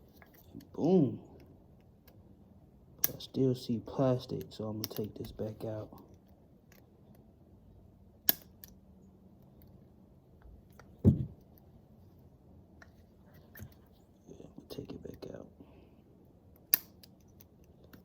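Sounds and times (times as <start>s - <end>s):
sharp metallic click: 3.0s - 3.2s, 8.2s - 8.8s, 16.6s - 18.0s
dull knock: 11.0s - 11.4s.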